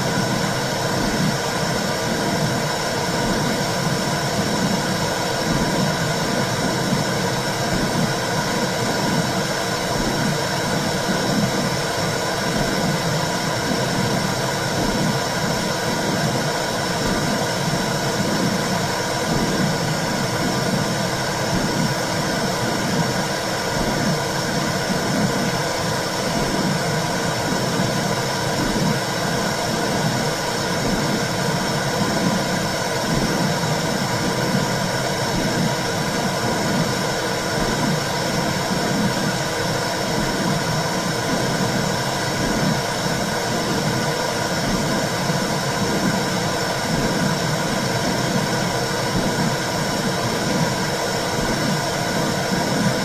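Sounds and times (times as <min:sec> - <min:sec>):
heartbeat pulse: 0:00.1 - 0:01.4, 0:02.1 - 0:11.8, 0:12.4 - 0:25.6, 0:26.3 - 0:53.0.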